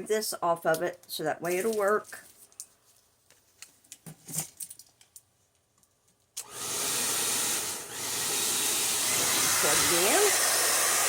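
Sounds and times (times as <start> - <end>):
hair dryer blowing: 6.4 - 11.0.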